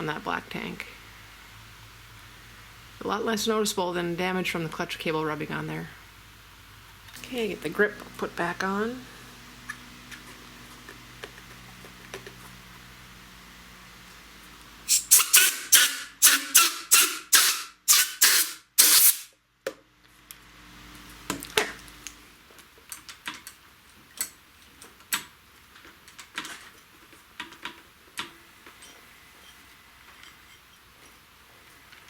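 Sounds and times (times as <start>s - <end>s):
spray bottle hissing squirts: 14.9s - 19.3s.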